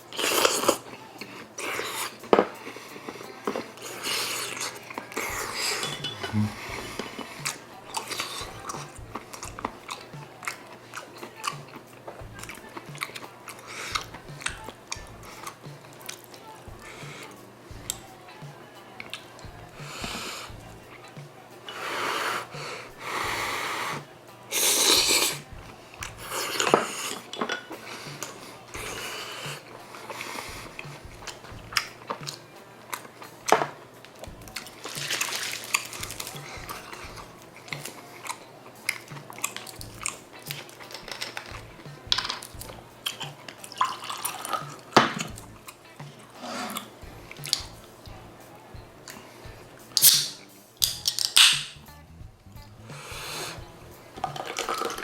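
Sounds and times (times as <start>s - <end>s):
utensils clinking against bowls: 0.0s - 18.1s, 23.9s - 47.8s, 54.2s - 55.0s.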